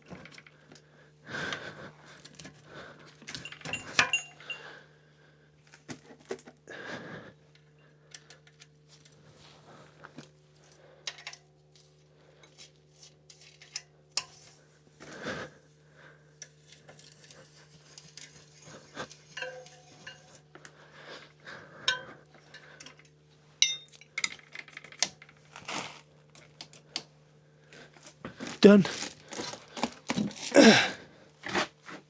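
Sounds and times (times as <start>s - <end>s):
hand tools clinking on metal: 3.3s - 4.7s, 17.0s - 20.7s, 21.8s - 25.0s.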